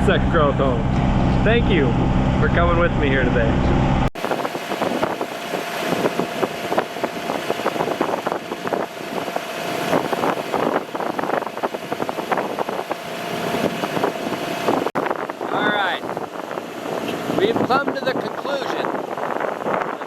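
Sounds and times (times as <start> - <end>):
motorboat engine whine: 0.0 - 20.0
wind noise: 0.0 - 20.0
hull slapping waves: 4.2 - 20.0.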